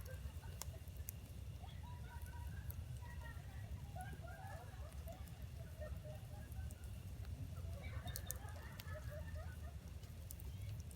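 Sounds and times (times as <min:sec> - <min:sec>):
campfire crackling: 0:08.0 - 0:10.9.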